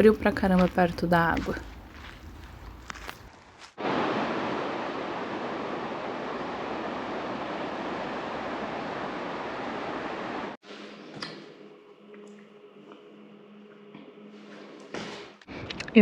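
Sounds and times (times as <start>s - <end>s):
rushing water: 3.8s - 10.6s.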